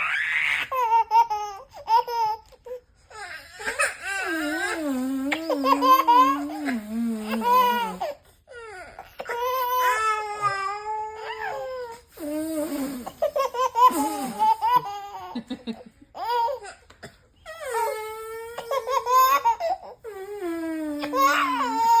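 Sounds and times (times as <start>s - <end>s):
baby crying: 0.0s - 12.1s, 17.5s - 20.4s, 21.0s - 22.0s
baby laughing: 5.4s - 6.8s, 13.3s - 16.7s.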